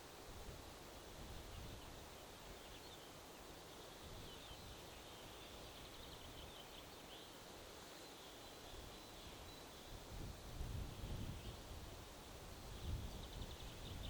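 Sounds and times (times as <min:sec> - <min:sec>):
distant small birds chirping: 0:00.0 - 0:14.0
wind gusting against microphone: 0:09.9 - 0:14.0.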